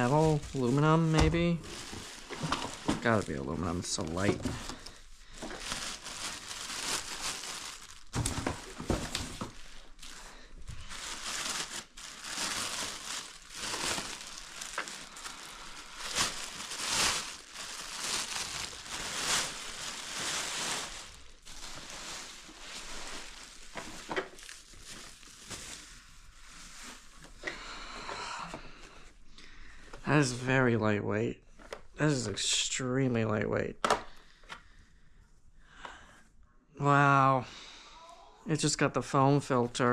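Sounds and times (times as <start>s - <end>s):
plastic packaging crinkling: 0.0s - 27.3s.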